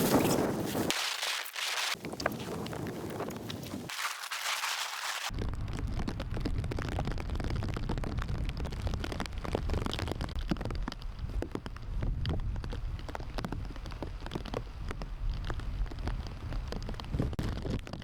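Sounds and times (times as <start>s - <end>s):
heavy rain falling: 5.2s - 18.0s.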